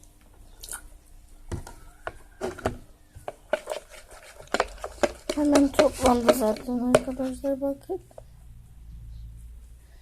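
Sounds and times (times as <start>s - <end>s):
slime being stirred: 1.8s - 8.3s.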